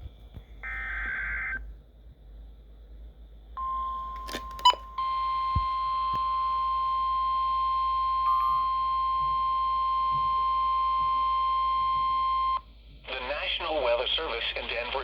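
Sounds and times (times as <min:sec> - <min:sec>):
radio hiss: 0:13.1 - 0:15.0.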